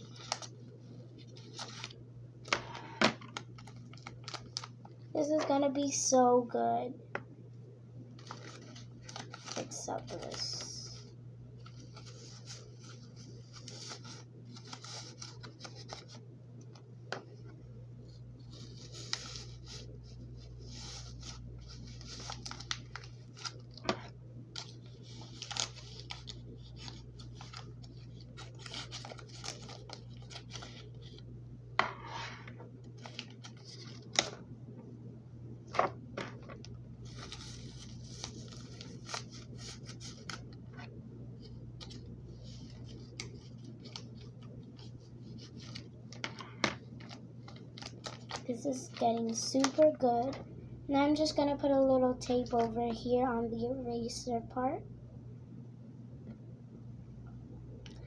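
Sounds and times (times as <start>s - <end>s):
paper and stuffing rustling: 0.0s - 6.4s, 8.2s - 16.2s, 18.1s - 31.2s, 31.8s - 34.4s, 35.8s - 50.4s.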